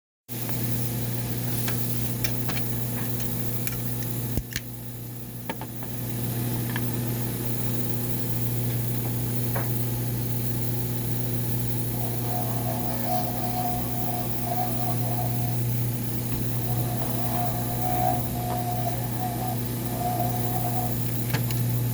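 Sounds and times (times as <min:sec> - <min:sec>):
low machine hum: 0:05.0 - 0:21.9.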